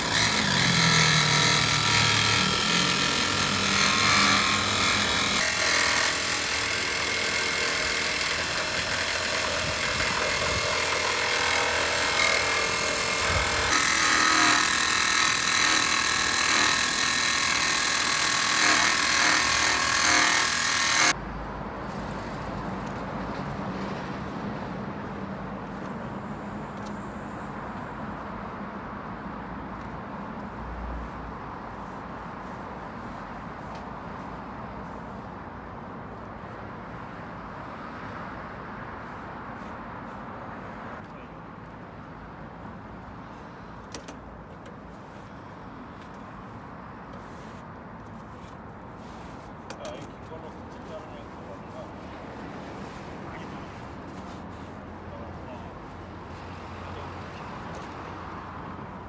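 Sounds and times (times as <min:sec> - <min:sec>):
power tool running: 0:00.0 - 0:21.2.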